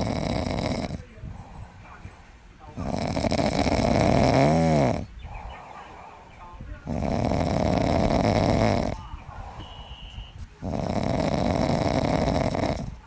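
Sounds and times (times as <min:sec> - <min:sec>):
loud snoring: 0:00.0 - 0:01.1, 0:02.8 - 0:05.1, 0:06.8 - 0:09.9, 0:10.6 - 0:13.0.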